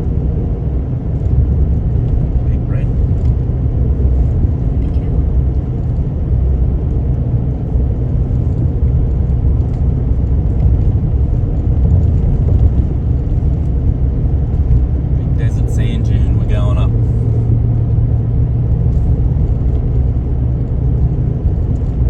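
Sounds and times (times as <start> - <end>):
vehicle rumbling on dirt road: 0.0 - 22.0.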